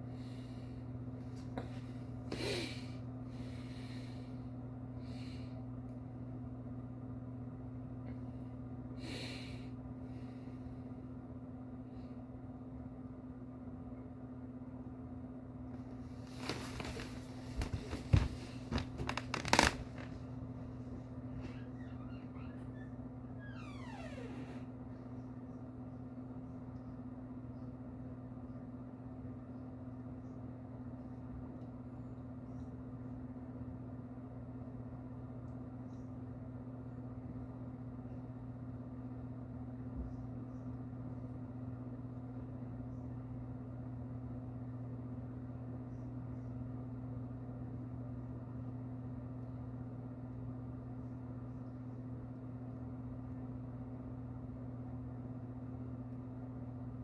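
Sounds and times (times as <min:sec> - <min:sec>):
steady low hum: 0:00.0 - 0:57.0.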